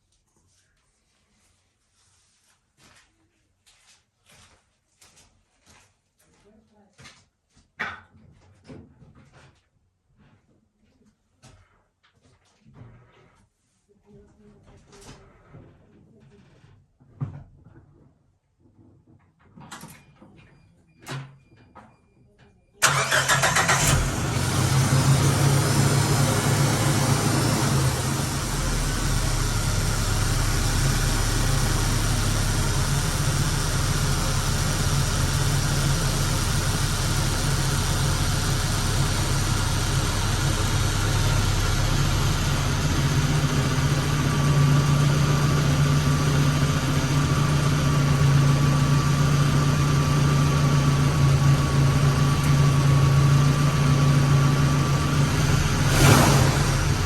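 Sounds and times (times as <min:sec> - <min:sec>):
car engine idling: 0:22.8 - 0:57.0.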